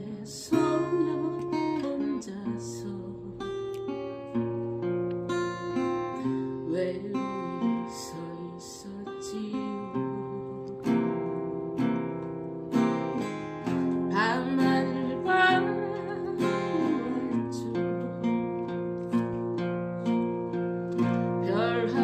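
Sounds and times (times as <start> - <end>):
person singing: 0.0 - 3.6, 6.2 - 10.8, 14.1 - 18.6, 21.3 - 22.0
acoustic guitar strumming: 0.0 - 22.0.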